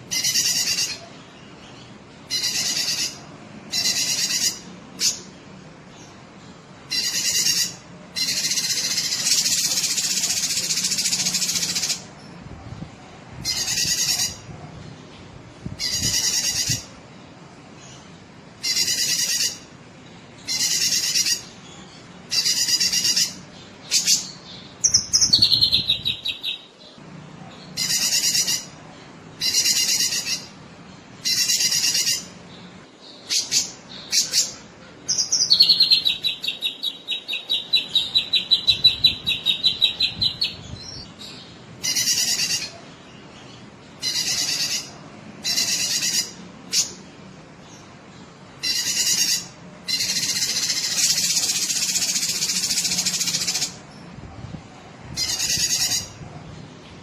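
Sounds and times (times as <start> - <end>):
rapid bird trill: 0.0 - 5.5, 6.8 - 12.1, 15.8 - 16.9, 18.6 - 19.7, 20.3 - 26.8, 27.7 - 28.8, 29.4 - 30.6, 31.2 - 47.0, 48.6 - 53.9, 55.2 - 56.2
bird singing: 0.0 - 12.4, 17.8 - 53.8.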